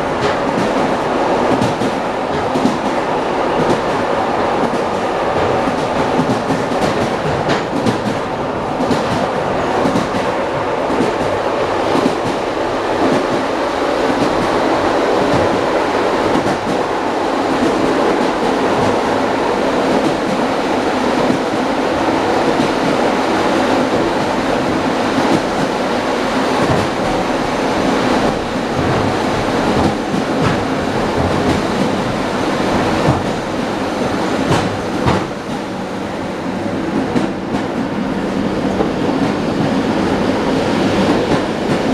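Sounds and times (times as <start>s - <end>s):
train wheels clattering over rail joints: 26.5s - 33.7s, 34.3s - 35.7s.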